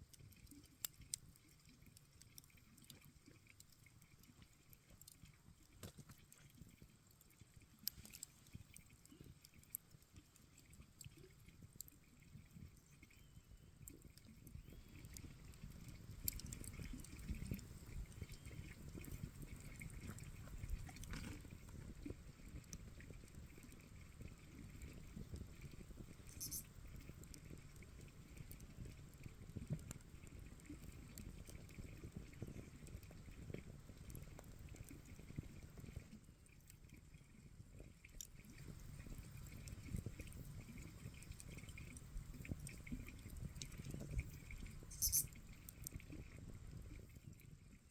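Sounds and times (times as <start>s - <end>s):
campfire crackling: 14.9s - 28.8s.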